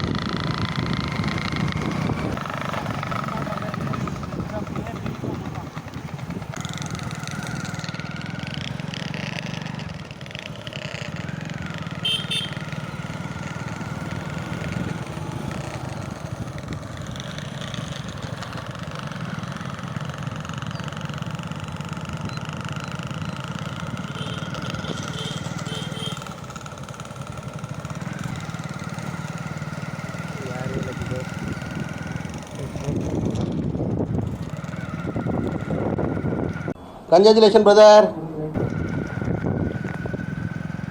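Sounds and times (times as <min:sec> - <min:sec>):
motorcycle engine rumble: 0:00.0 - 0:40.9
exhaust whistle: 0:11.2 - 0:15.6, 0:22.2 - 0:26.5.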